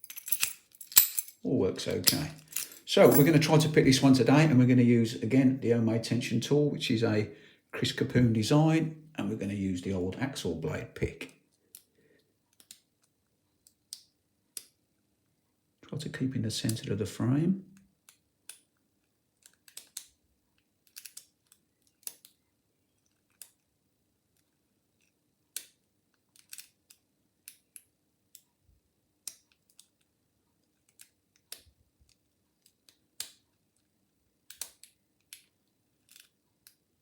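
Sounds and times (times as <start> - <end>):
lock pick clicking in padlock: 19.4 - 20.1, 20.8 - 22.4, 33.2 - 33.4, 34.5 - 35.5.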